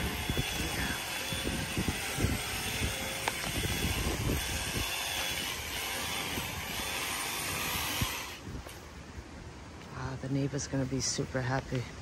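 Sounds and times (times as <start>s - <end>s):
leaf blower air blast: 0.0s - 8.9s.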